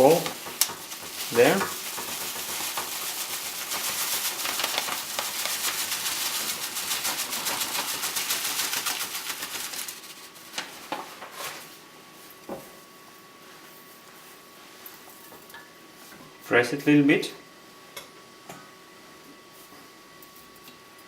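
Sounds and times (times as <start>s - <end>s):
dried flowers rustling through paper funnel: 0.0s - 11.9s.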